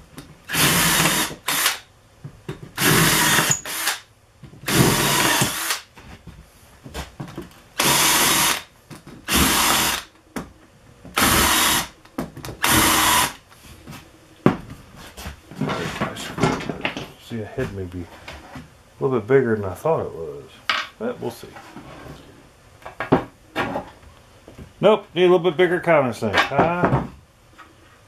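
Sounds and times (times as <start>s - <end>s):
power drill boring into wood: 0.5s - 1.8s, 2.8s - 4.0s, 4.7s - 5.8s, 7.8s - 8.6s, 9.3s - 10.1s, 11.2s - 11.9s, 12.6s - 13.4s.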